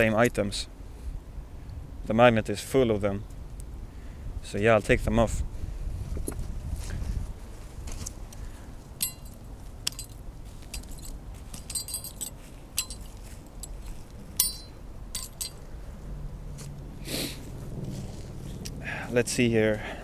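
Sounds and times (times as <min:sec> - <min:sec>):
metal pieces clinking: 0:09.0 - 0:15.6.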